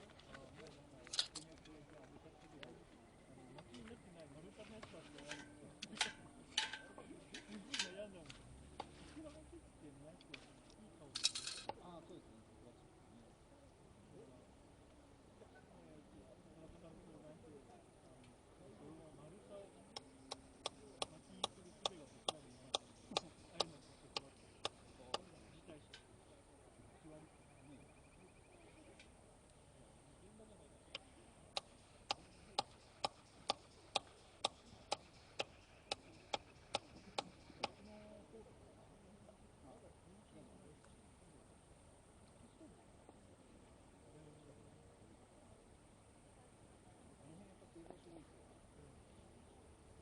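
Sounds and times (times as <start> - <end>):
faint distant voices murmuring: 0.0 - 50.0
sharp ticks: 19.9 - 26.1, 30.9 - 37.9.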